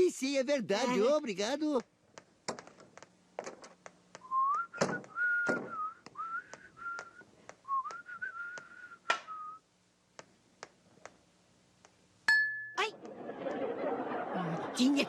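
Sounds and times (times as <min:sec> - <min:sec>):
person whistling a tune: 0:04.2 - 0:09.6
knocks: 0:04.8 - 0:05.8.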